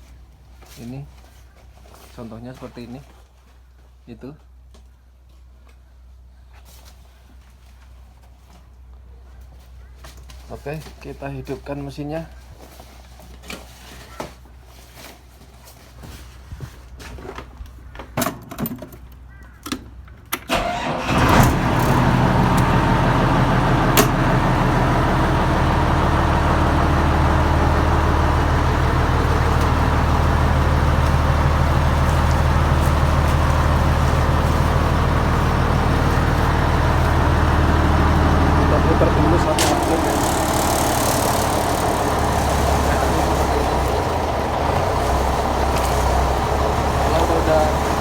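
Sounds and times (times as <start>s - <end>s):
feed pellet machine humming: 20.5s - 48.0s.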